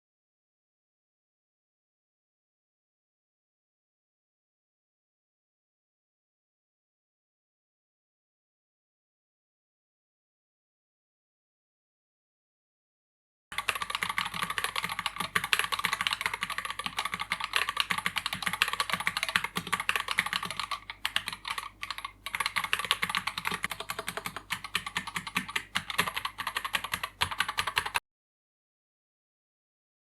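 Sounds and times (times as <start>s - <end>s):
mechanical keyboard typing clatter: 13.5s - 28.0s.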